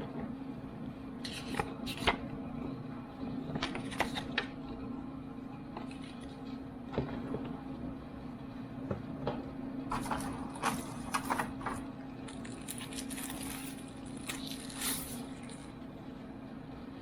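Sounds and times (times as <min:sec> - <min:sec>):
steady low hum: 0:00.0 - 0:17.0
packaging clicks and rustles: 0:09.9 - 0:15.7.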